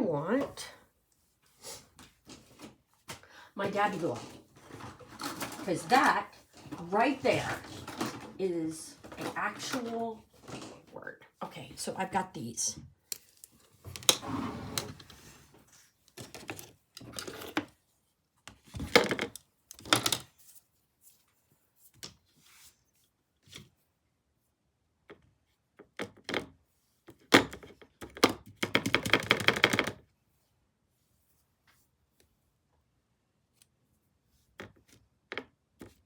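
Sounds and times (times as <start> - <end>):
scraping and rattling: 3.6 - 10.9.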